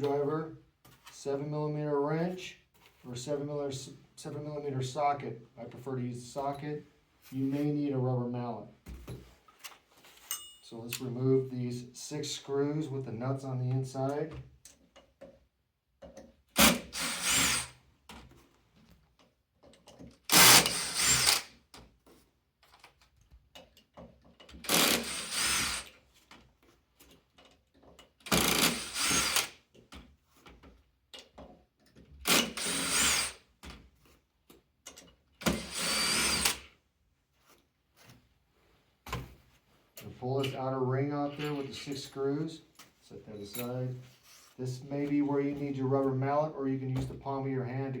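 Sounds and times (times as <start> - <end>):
screw gun bursts: 16.6 - 17.7, 20.3 - 21.5, 24.6 - 25.9, 28.3 - 29.6, 32.2 - 33.4, 35.4 - 36.6.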